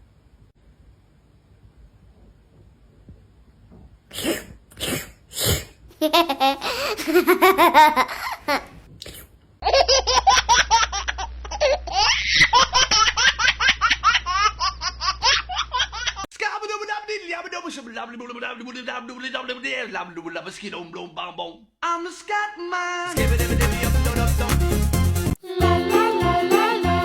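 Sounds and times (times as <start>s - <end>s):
high-pitched laughter: 6.0s - 8.8s.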